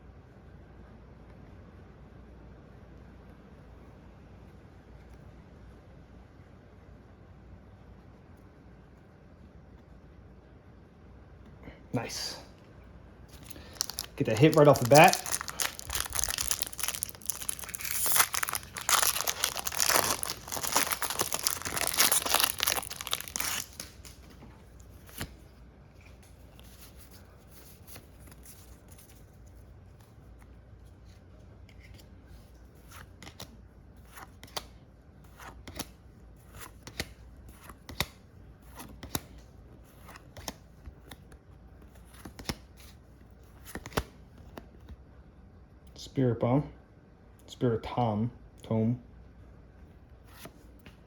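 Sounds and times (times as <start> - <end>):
foil pack tearing and crinkling: 13.4 - 24.2.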